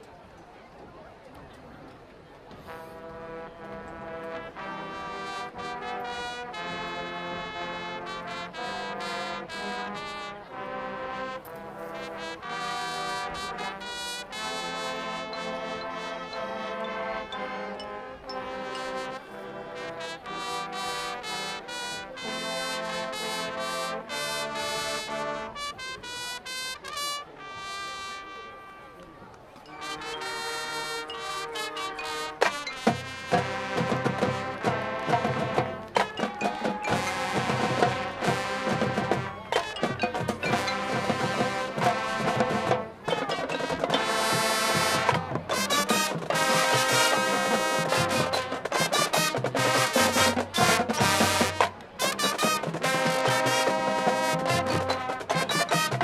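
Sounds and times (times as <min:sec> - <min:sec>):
marching band brass chords: 0:02.5 - 0:29.0, 0:29.7 - 0:56.0
drums and percussion: 0:30.0 - 0:56.0.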